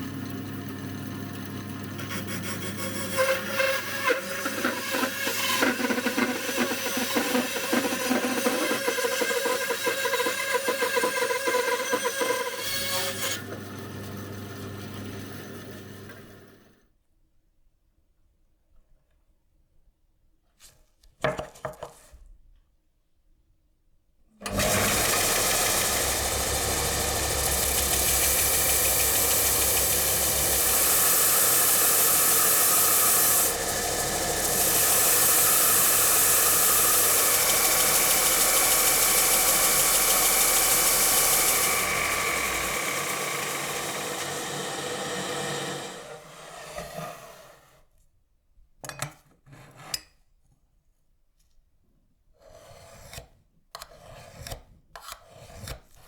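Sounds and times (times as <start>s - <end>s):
power tool with abrasive hiss: 24.5s - 47.8s.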